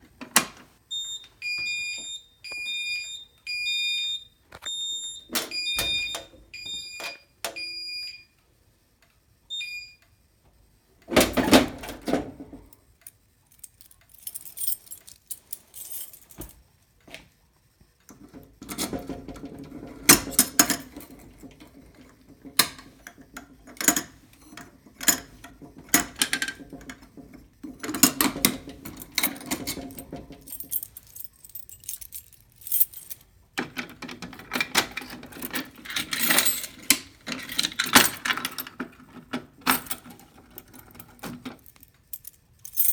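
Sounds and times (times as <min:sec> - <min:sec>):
fire alarm horn pulses: 0:00.9 - 0:08.3, 0:09.5 - 0:10.0.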